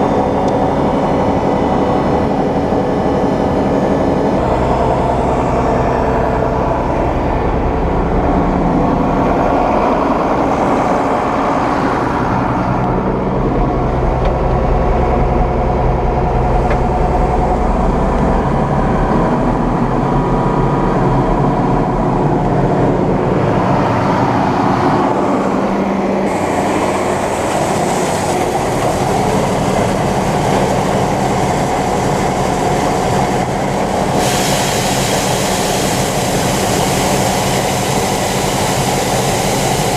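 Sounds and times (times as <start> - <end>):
combine harvester drone: 0.0 - 39.9
high hiss: 33.9 - 39.9.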